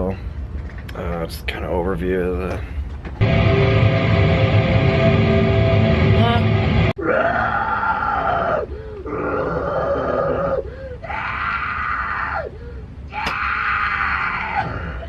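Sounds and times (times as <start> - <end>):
growled screamed vocals: 7.0 - 12.5, 13.1 - 15.0.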